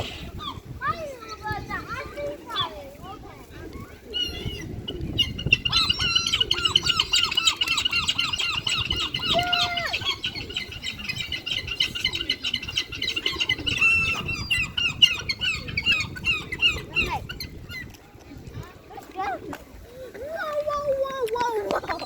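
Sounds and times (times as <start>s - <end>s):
seagulls calling: 3.8s - 17.9s.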